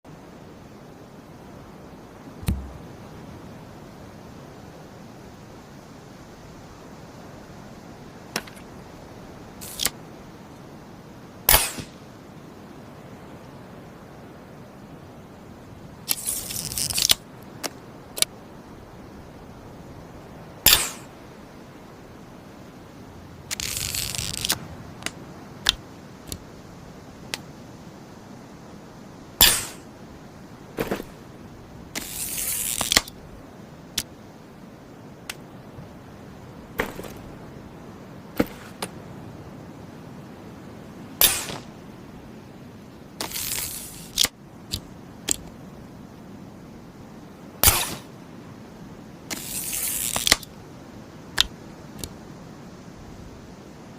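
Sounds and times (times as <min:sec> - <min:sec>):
rasping hiss: 0:09.5 - 0:10.0, 0:11.5 - 0:12.1, 0:16.1 - 0:18.3, 0:20.6 - 0:21.2, 0:23.5 - 0:27.6, 0:29.4 - 0:29.9, 0:30.8 - 0:33.2, 0:41.2 - 0:41.7, 0:43.2 - 0:45.5, 0:47.6 - 0:48.2, 0:49.3 - 0:50.5
crossbow clicks and snaps: 0:09.6 - 0:10.0, 0:16.1 - 0:18.3, 0:23.5 - 0:26.5, 0:32.0 - 0:33.2, 0:43.2 - 0:45.5, 0:49.3 - 0:50.5, 0:51.4 - 0:52.2.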